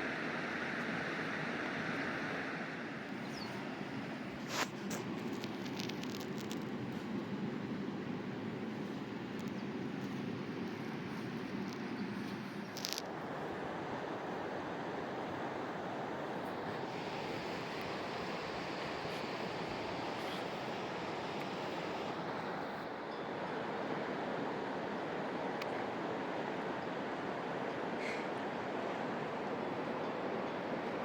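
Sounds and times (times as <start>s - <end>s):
river water rushing: 13.1s - 31.0s.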